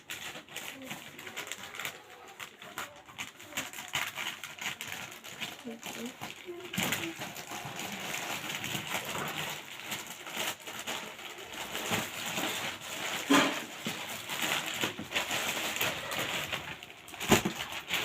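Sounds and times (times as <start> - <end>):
packaging rustling: 0.0 - 18.0.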